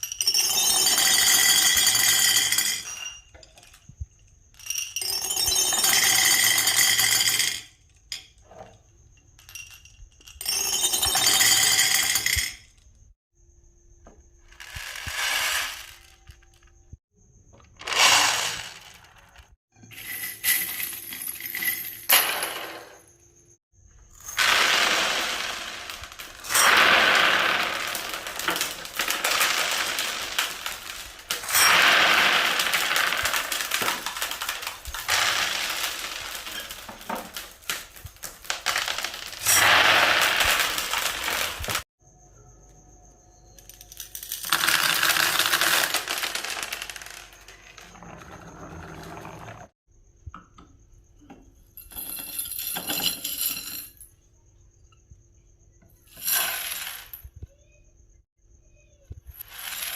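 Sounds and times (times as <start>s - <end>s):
marbles rattling down wooden tracks: 14.6s - 16.6s, 17.8s - 20.8s, 24.3s - 41.8s, 44.0s - 49.7s.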